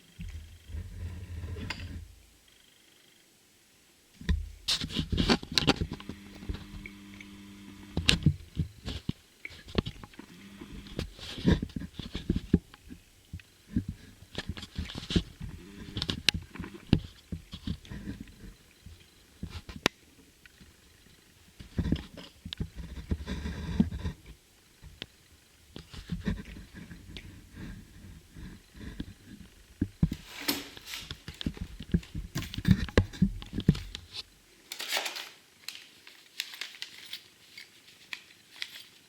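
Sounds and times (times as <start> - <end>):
rustling packaging: 30.1 - 39.0.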